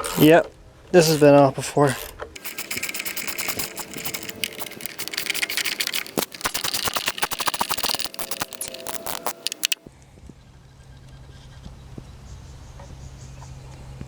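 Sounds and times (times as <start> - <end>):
ratchet wrench clicking: 2.0 - 9.9.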